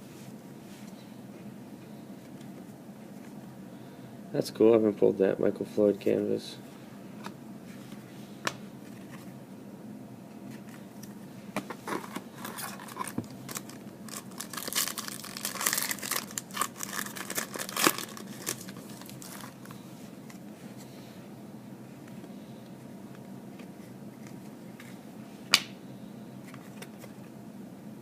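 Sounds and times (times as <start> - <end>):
foil wrapper tearing and crinkling: 12.4 - 19.8.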